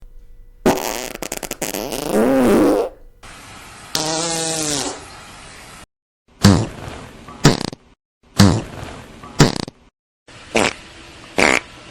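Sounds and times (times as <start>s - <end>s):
fart sound effects: 0.6s - 3.0s, 4.0s - 5.1s, 6.4s - 9.9s, 10.5s - 10.8s, 11.4s - 11.7s.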